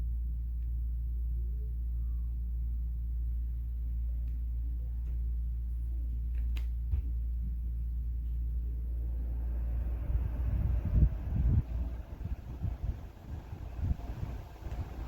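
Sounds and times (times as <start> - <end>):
fan running: 0.0 - 15.0.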